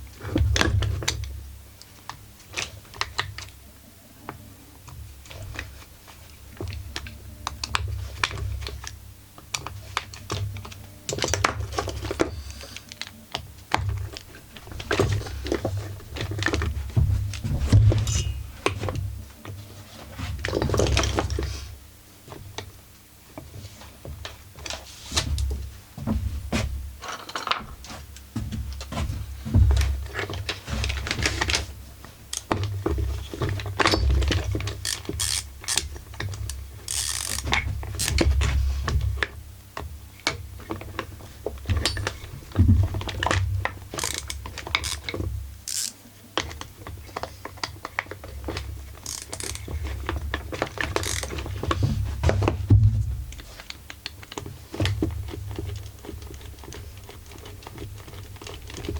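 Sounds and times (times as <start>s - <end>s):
metallic clicks and ratcheting: 34.7s - 38.2s, 43.9s - 46.0s, 49.0s - 49.7s, 50.9s - 51.4s.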